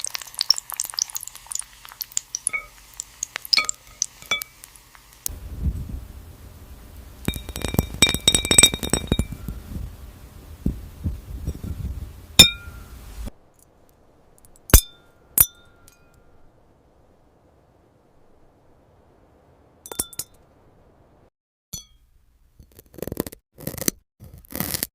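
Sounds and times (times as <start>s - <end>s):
glass clinks and taps: 2.5s - 2.7s, 3.6s - 4.5s, 7.3s - 9.6s, 12.4s - 12.9s, 19.9s - 20.4s, 21.8s - 22.0s.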